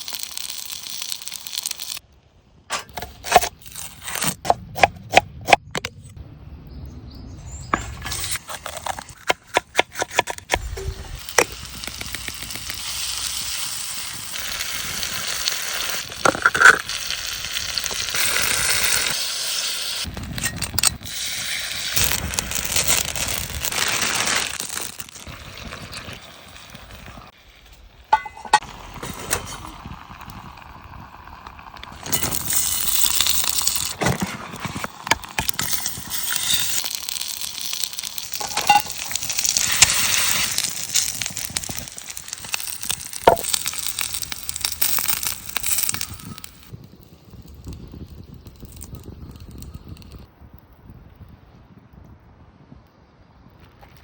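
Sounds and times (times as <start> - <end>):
food sizzling in a pan: 0.0 - 2.0, 10.7 - 20.1, 35.6 - 46.7.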